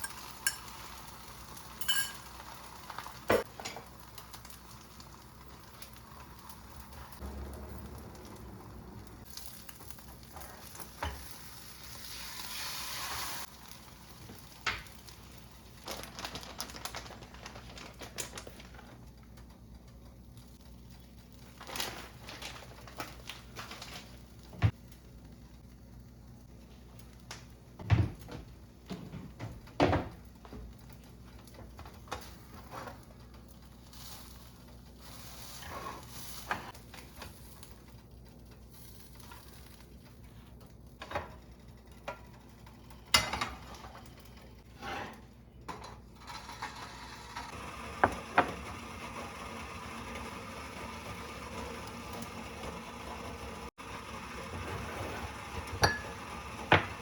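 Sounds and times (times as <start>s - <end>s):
utensils and dishes clinking: 0.0s - 1.0s, 1.8s - 2.6s, 55.5s - 57.0s.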